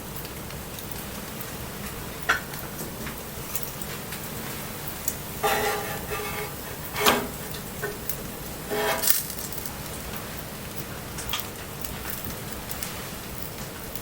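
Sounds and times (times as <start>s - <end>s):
light rain falling: 0.0s - 14.0s
wooden scraping: 5.4s - 7.3s, 8.6s - 9.8s.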